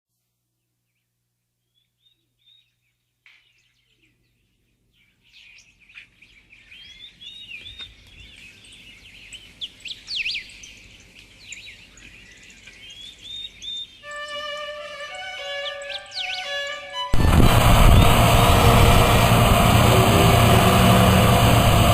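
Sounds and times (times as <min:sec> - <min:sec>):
music: 0:14.0 - 0:17.4
birds chirping: 0:15.5 - 0:21.9.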